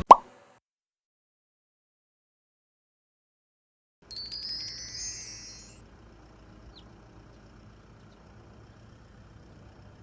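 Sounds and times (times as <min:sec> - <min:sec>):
chiming jingle: 0:04.0 - 0:05.9
low rumble background noise: 0:04.8 - 0:10.0.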